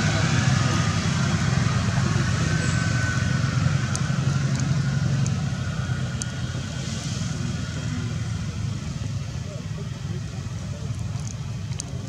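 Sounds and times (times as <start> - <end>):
low engine hum: 0.0 - 12.0
faint clicks: 10.9 - 12.0.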